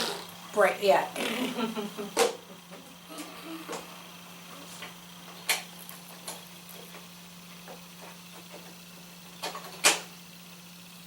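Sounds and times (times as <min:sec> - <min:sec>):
steady low hum: 0:00.0 - 0:11.0
sharp clicks and knocks: 0:04.8 - 0:10.1.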